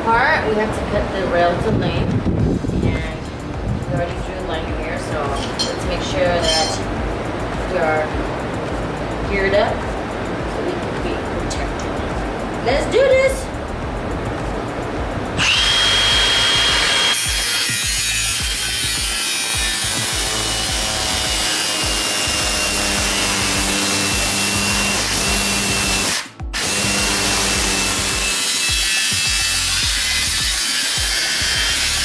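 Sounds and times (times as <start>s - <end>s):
power saw cutting metal: 5.3s - 6.9s, 15.4s - 32.0s.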